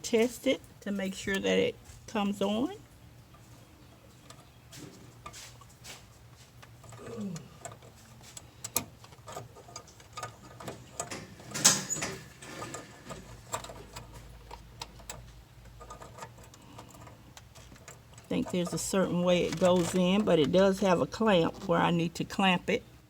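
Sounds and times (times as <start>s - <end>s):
plastic clicks and rattles: 8.6s - 20.9s.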